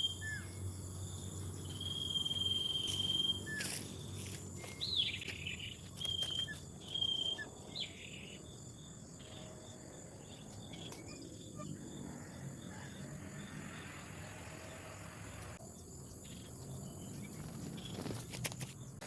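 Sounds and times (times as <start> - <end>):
insects droning: 0.0 - 19.0
bird whistles and chirps: 1.7 - 3.8, 4.6 - 8.2.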